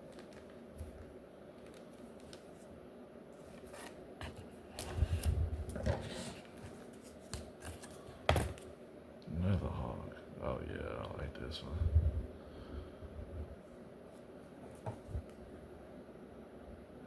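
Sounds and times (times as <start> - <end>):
plastic sleeves crinkling and sliding: 0.0 - 2.7.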